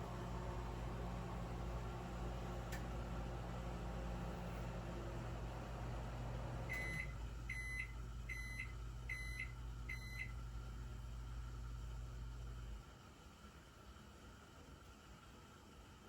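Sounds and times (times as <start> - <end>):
steady low hum: 0.0 - 12.8.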